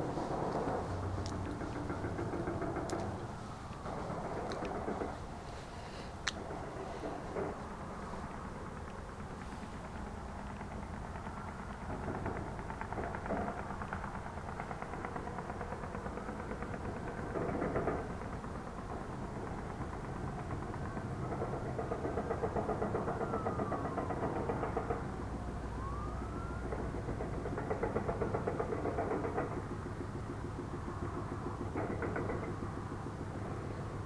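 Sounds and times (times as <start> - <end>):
distant siren: 0.0 - 34.0
rapid pulsing banging rumble: 0.0 - 34.0.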